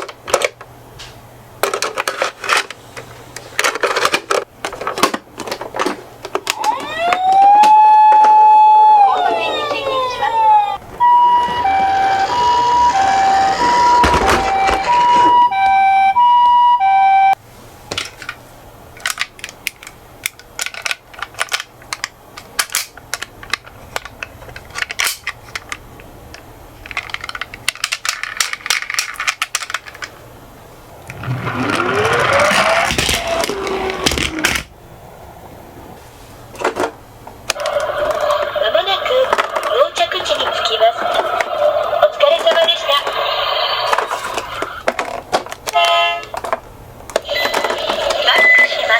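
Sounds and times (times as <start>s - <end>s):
toy cars rolling and rattling: 3.5s - 6.8s, 11.1s - 15.4s, 19.0s - 25.8s, 26.8s - 30.2s, 31.1s - 34.7s, 37.5s - 48.9s
two-tone ambulance siren: 6.5s - 17.4s, 31.2s - 34.1s.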